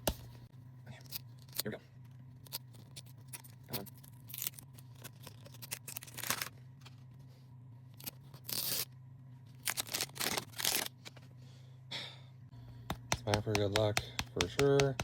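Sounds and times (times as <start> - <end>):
plastic wrapping tearing: 4.2 - 6.5, 9.6 - 11.0.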